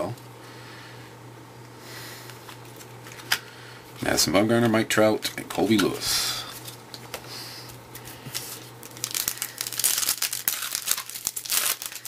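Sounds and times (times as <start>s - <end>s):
card pack wrapper crinkling: 7.9s - 12.0s.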